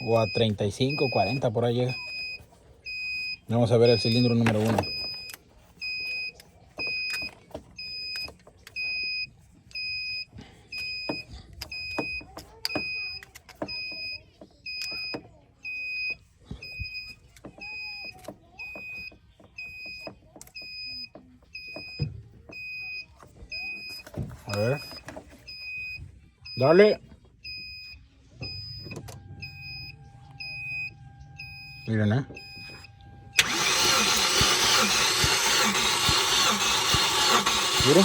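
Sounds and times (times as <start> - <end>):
high electronic beeps: 0.0 - 10.2, 20.6 - 38.0.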